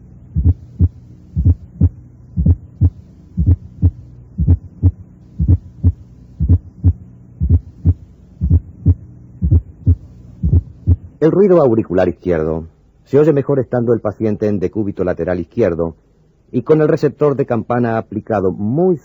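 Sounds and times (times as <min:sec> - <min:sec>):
heartbeat through stethoscope: 0:00.3 - 0:11.2.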